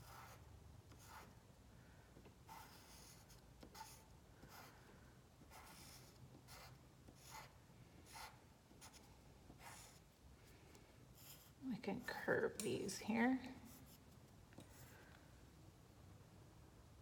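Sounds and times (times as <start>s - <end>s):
pencil strokes on paper: 0.0s - 1.4s, 2.4s - 4.8s, 5.4s - 10.1s, 11.1s - 14.9s.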